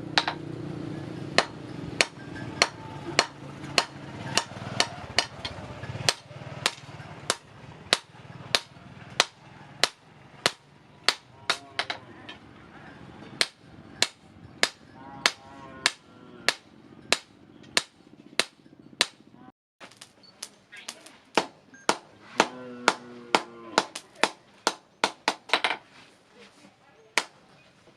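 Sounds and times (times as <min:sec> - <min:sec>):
hammer striking steel on anvil: 0:00.0 - 0:19.2.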